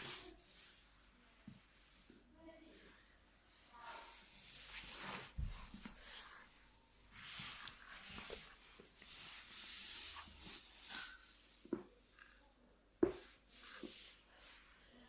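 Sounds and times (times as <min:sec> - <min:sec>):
soft rubbing: 0:00.0 - 0:02.6, 0:03.4 - 0:12.3, 0:13.0 - 0:15.0.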